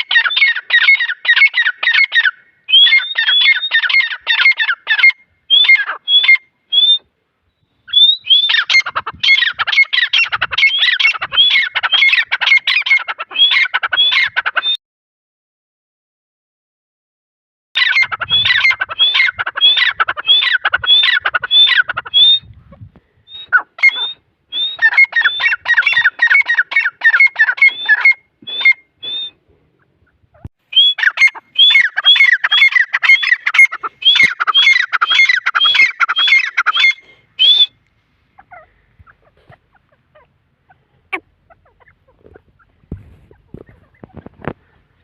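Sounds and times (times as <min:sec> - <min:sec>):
francolin calling: 0:00.0 - 0:14.8, 0:17.8 - 0:22.5, 0:23.2 - 0:29.4, 0:30.0 - 0:37.8.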